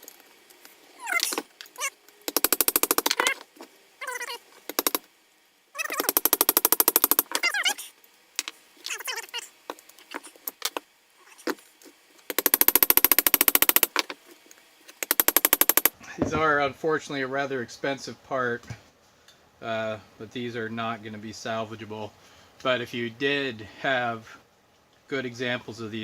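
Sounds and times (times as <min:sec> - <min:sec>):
rapid hammering on metal: 0:02.3 - 0:03.2, 0:04.7 - 0:05.0, 0:06.0 - 0:07.3, 0:12.3 - 0:14.0, 0:15.0 - 0:15.9.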